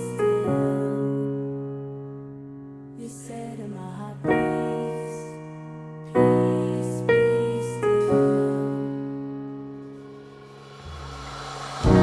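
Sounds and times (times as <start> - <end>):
electric piano chords: 0.0 - 3.0, 4.2 - 12.0.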